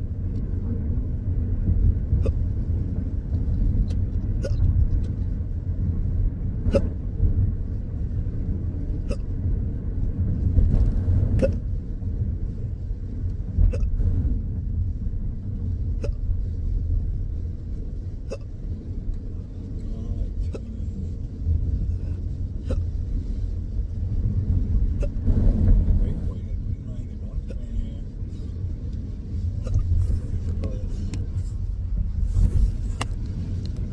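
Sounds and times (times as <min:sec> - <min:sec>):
steady low rumble: 0:00.0 - 0:33.9
person hiccuping: 0:04.4 - 0:04.7, 0:06.7 - 0:07.0, 0:09.0 - 0:09.3, 0:11.4 - 0:11.6, 0:13.7 - 0:14.0, 0:16.0 - 0:16.2, 0:18.3 - 0:18.5, 0:20.4 - 0:20.9, 0:22.6 - 0:22.9, 0:29.6 - 0:29.9.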